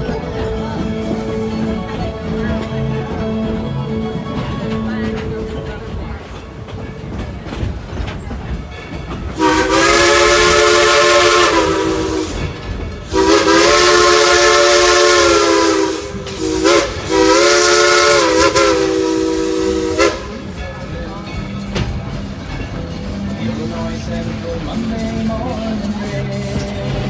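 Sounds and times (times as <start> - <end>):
train running: 0.0 - 27.0
steam locomotive whistle: 9.4 - 20.5.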